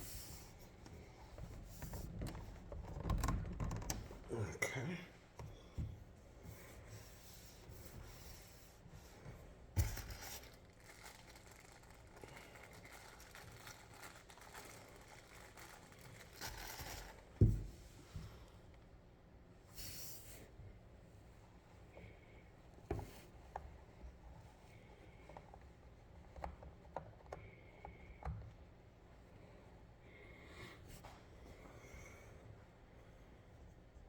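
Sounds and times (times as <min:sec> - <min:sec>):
hands rubbing and scraping packaging: 0:07.0 - 0:17.4.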